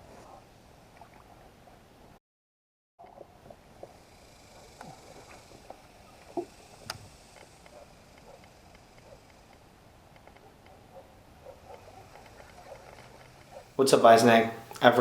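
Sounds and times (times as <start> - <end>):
faint background hiss: 3.5 - 15.0.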